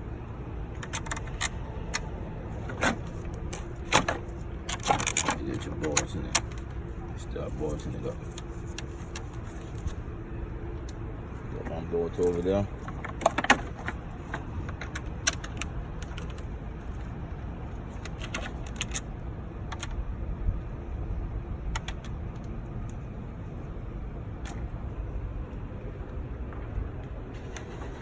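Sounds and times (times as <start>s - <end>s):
low background rumble: 0.0s - 28.0s
hand tools clicking and clinking: 2.7s - 6.7s.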